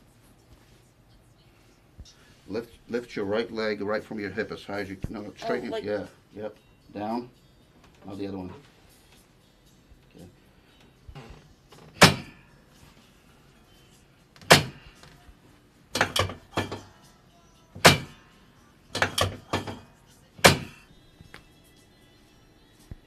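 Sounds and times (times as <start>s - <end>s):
sharp knocks: 12.0s - 12.4s, 14.4s - 14.8s, 17.8s - 18.2s, 20.4s - 20.8s.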